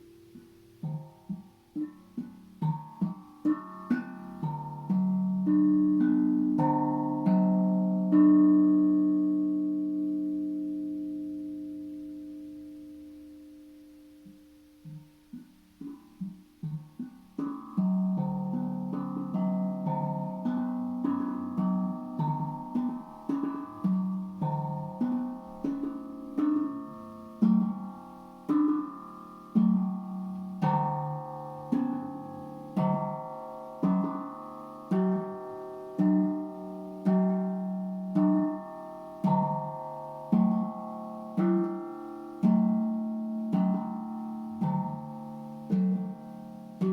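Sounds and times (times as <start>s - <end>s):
steel tongue drum melody: 0.0s - 46.9s.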